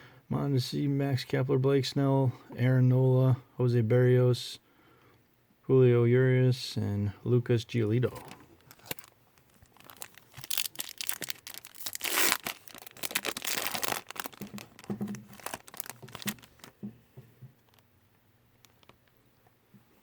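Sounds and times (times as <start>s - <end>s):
card pack wrapper tearing and crinkling: 8.0s - 16.8s.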